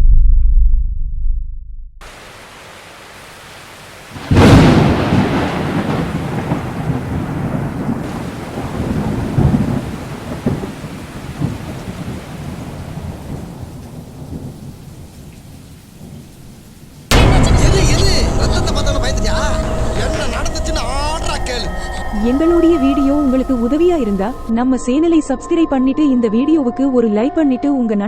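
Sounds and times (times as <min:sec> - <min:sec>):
steady rain: 0:02.0 - 0:24.5
thunderclap: 0:04.1 - 0:15.1, 0:17.1 - 0:24.5
rolling thunder: 0:04.1 - 0:15.3, 0:17.1 - 0:24.6.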